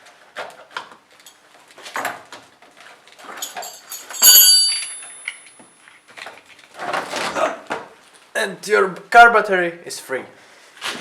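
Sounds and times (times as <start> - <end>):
ringing metal clink: 3.4 - 5.8.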